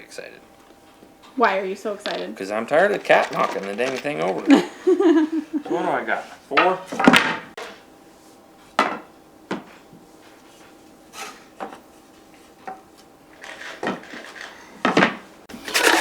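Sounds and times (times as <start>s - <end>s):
wood and metal knocks and clinks: 14.9s - 16.0s.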